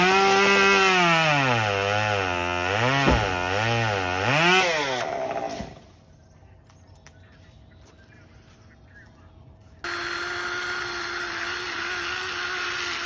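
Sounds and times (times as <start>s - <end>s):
chainsaw cutting branch: 0.0s - 5.8s.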